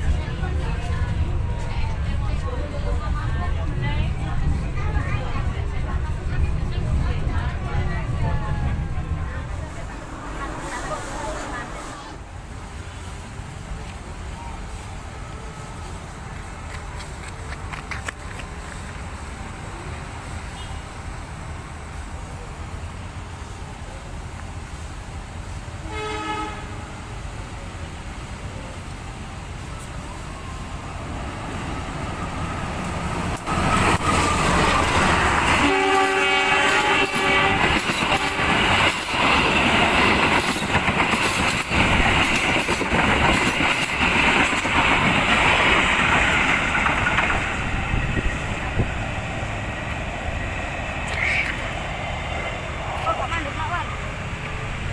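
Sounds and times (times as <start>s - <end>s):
train rumble and clatter: 0.0s - 54.9s
train horn blasts: 25.8s - 27.2s, 35.4s - 38.7s.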